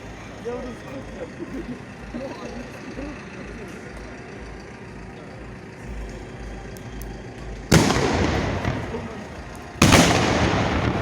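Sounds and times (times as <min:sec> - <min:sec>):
echoing rumble: 0:04.4 - 0:11.0
fireworks bangs: 0:07.7 - 0:11.0.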